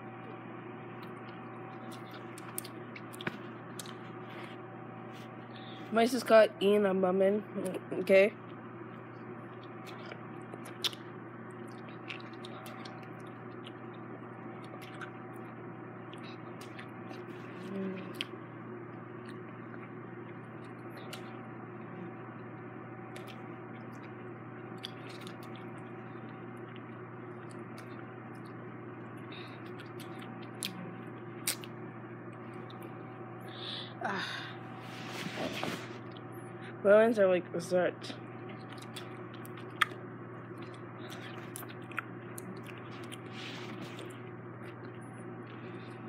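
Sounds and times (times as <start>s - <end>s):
steady background hum: 0.0s - 46.0s
wet chewing mouth sounds: 1.0s - 4.5s, 9.6s - 14.0s, 14.6s - 15.2s, 24.8s - 25.9s, 29.4s - 31.8s, 38.5s - 46.0s.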